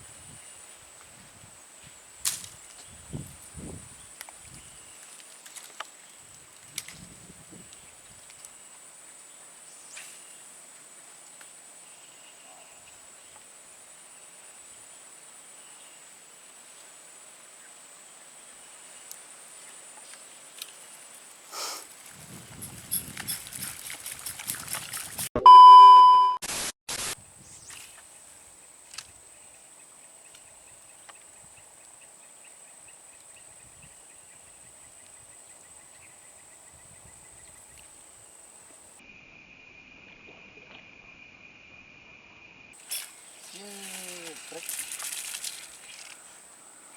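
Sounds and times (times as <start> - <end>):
loud electronic beep: 25.4 - 26.5.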